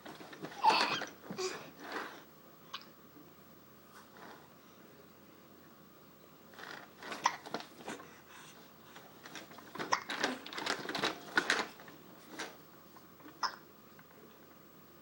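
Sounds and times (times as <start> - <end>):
plastic toys clattering: 9.2 - 12.6.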